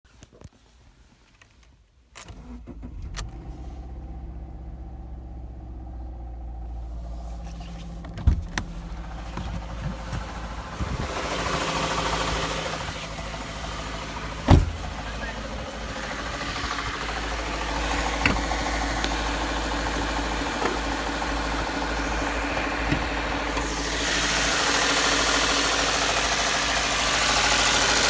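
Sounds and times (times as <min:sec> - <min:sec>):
car engine starting and idling: 0:00.7 - 0:28.0
loud engine thump: 0:07.4 - 0:26.8.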